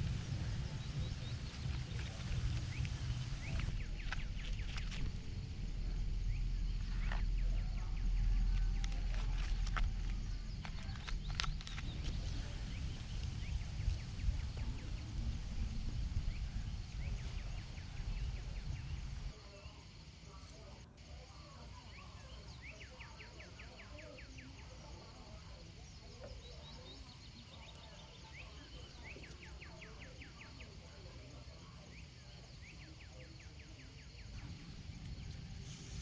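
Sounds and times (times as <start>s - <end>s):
low rumble: 0.0s - 19.3s.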